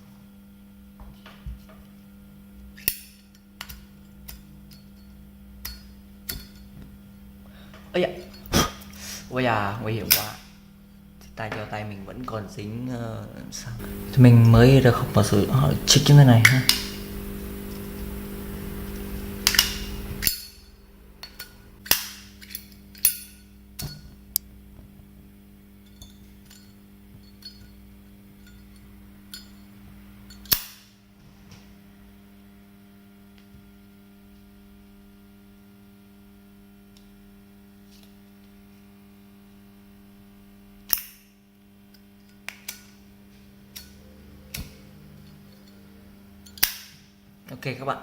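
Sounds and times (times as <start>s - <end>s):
low hum: 0.0s - 41.3s, 41.9s - 47.5s
lighter lid clicking open and shut: 30.4s - 30.8s.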